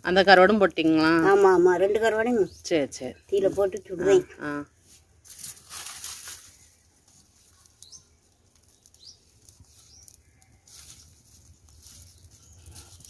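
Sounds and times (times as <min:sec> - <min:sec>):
bird chirps: 0:07.5 - 0:11.1.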